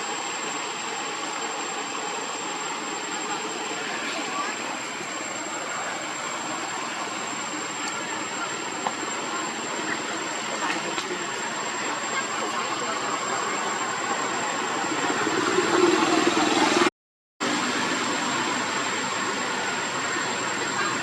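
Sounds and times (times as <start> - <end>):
steady hiss: 0.0 - 15.4
vehicle engine running: 0.0 - 21.0.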